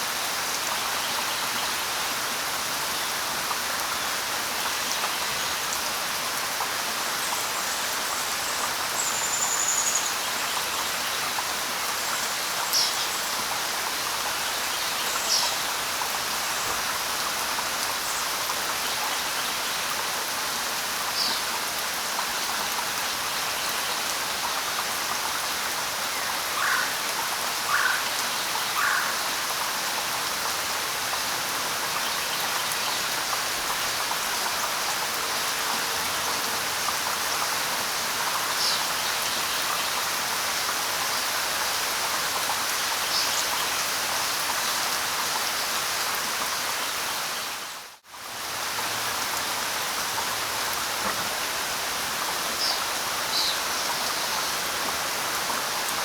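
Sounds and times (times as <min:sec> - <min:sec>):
light rain hiss: 0:00.0 - 0:56.0.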